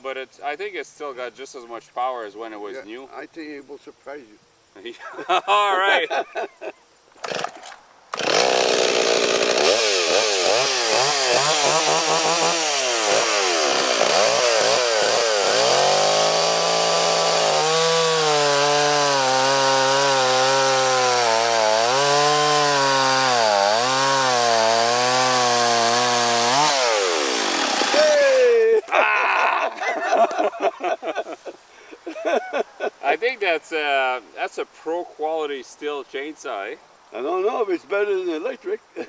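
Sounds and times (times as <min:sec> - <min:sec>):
chainsaw revving and cutting log: 0:07.2 - 0:28.6.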